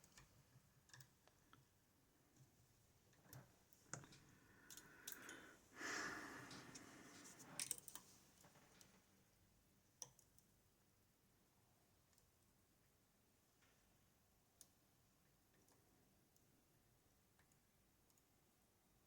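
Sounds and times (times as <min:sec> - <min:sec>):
soft breathy rush: 0:04.3 - 0:07.6.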